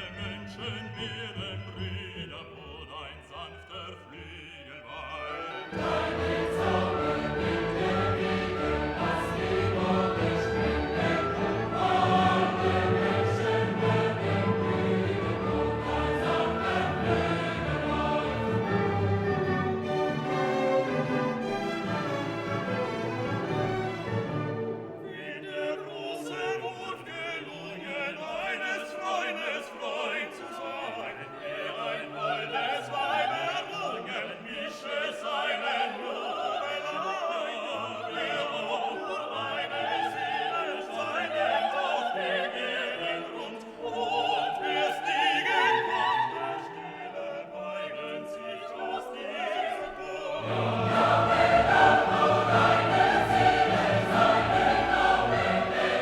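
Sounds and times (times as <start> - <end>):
classical choir and orchestra: 0.0 - 56.0.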